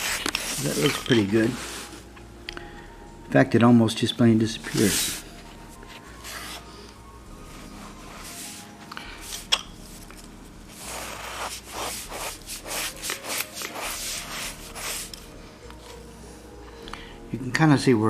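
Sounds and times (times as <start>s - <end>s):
brush rubbing over carpet: 0.0s - 2.1s, 7.6s - 8.8s, 10.7s - 15.2s.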